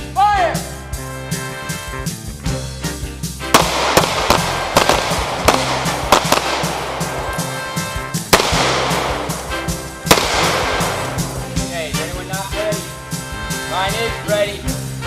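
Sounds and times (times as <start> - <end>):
rock music: 0.0 - 15.0
gunshots: 3.5 - 11.8.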